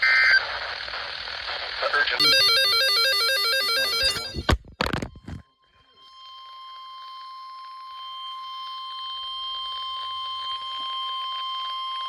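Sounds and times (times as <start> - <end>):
steady alarm tone: 2.2 - 4.6.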